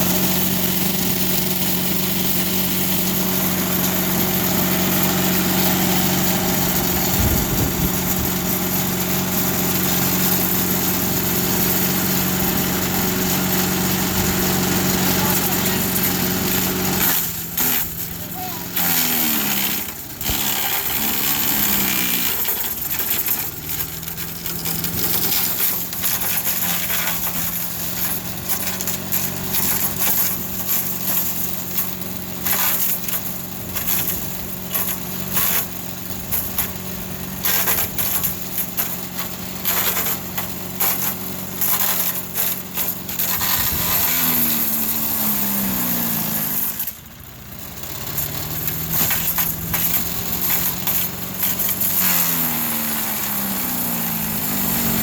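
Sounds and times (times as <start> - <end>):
wood chipper engine running: 0.0 - 55.0
wood crackling being shredded: 0.0 - 55.0.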